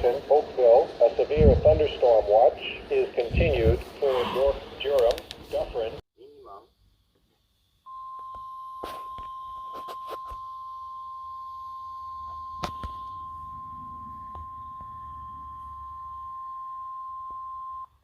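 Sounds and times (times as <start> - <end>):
weather radio alarm tone: 0.0 - 5.9, 7.9 - 18.0
low rumble: 1.3 - 2.0, 13.0 - 16.3
sharp clicks: 4.9 - 5.4.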